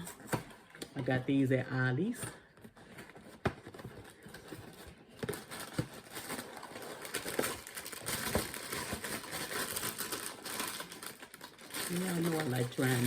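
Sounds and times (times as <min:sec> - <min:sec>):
plastic bag crinkling: 0:03.6 - 0:13.0.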